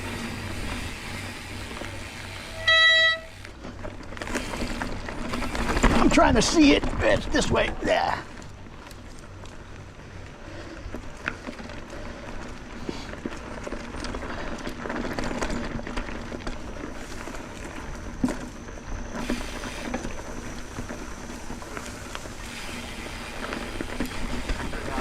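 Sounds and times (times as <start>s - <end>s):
bike clicks and rattles: 0.0s - 25.0s
tyres rolling on dirt and gravel: 0.0s - 25.0s.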